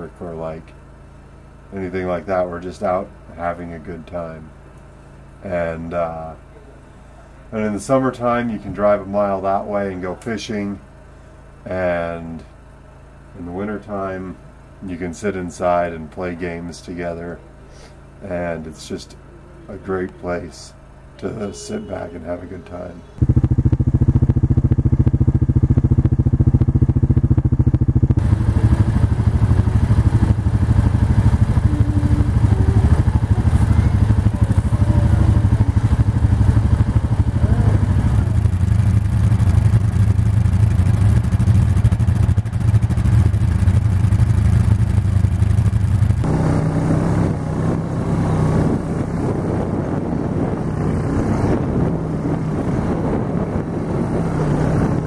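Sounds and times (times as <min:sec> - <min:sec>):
small vehicle engine running: 0:15.9 - 0:55.0
rushing noise: 0:28.2 - 0:40.6.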